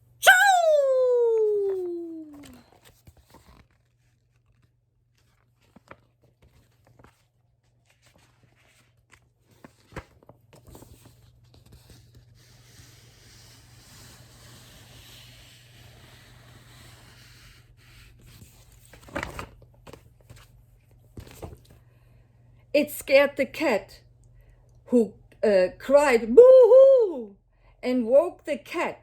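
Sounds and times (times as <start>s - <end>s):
book pages turning: 1.4s - 13.2s, 13.8s - 21.8s.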